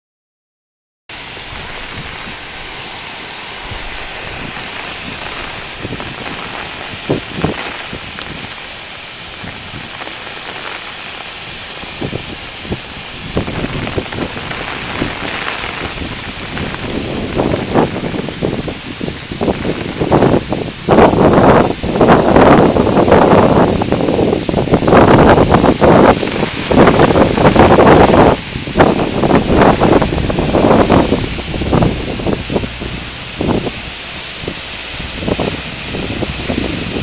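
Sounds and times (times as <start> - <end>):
heavy rain: 1.1 - 37.0
wind: 1.1 - 37.0.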